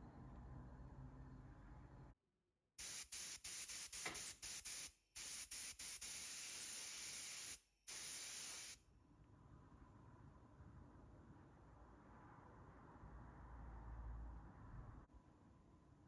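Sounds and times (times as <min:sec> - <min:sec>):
pressurised spray hissing: 0:02.8 - 0:08.8.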